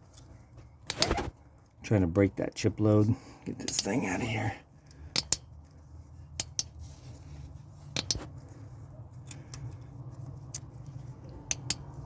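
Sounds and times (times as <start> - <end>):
sharp metallic clicks: 3.6 - 4.0, 5.1 - 5.5, 7.9 - 8.2, 11.4 - 12.0.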